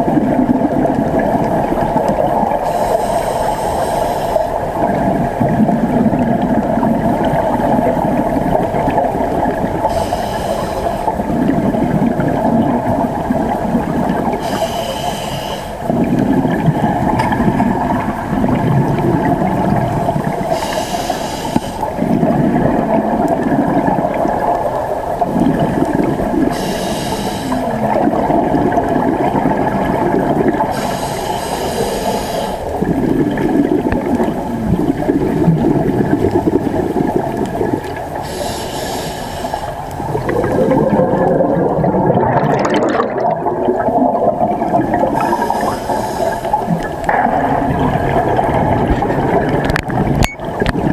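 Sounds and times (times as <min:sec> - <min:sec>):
exhaled bubbles gushing: 0:00.0 - 0:50.9
steady hum: 0:00.0 - 0:50.9
regulator inhale hissing: 0:02.6 - 0:04.6, 0:09.8 - 0:11.3, 0:14.3 - 0:15.9, 0:20.5 - 0:22.0, 0:26.4 - 0:27.9, 0:30.7 - 0:32.9, 0:38.2 - 0:40.0, 0:45.1 - 0:46.9.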